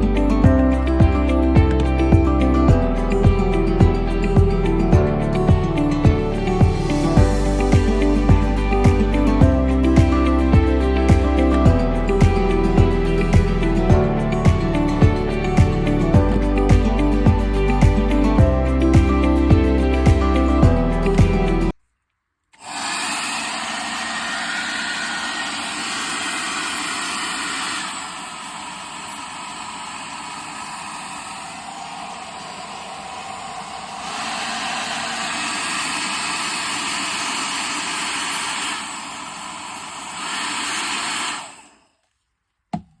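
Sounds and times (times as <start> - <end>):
hair dryer blowing: 22.6 - 41.9.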